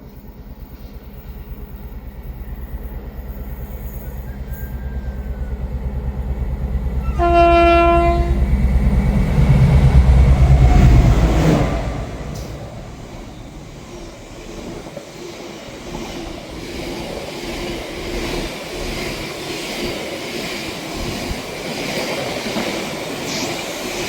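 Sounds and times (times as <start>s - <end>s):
diesel train engine passing: 0.0s - 24.0s
train horn: 7.0s - 8.5s.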